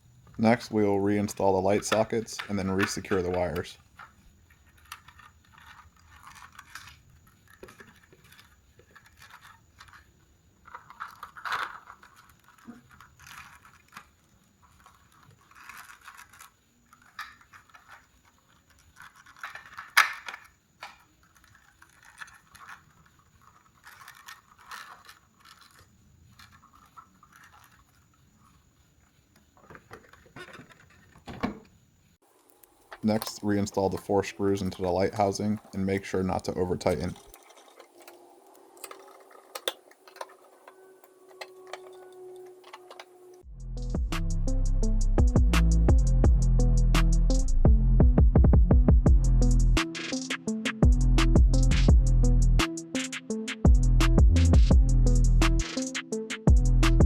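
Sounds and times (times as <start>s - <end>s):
plastic scraping and rustling: 0.2s - 43.5s.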